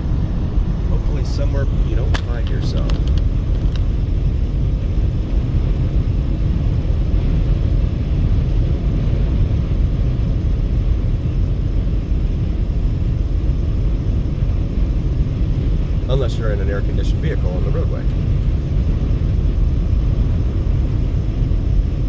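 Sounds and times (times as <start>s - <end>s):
car road and tyre noise: 0.0s - 10.2s
wind noise: 0.0s - 22.0s.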